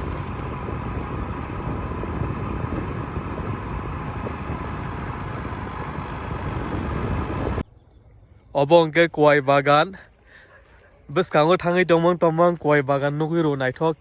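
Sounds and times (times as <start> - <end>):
bus engine and road noise: 0.0 - 7.6.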